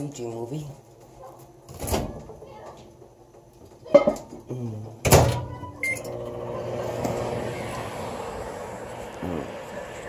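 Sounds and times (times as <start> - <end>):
microwave oven humming: 4.5 - 10.0
short microwave beep: 5.8 - 6.2.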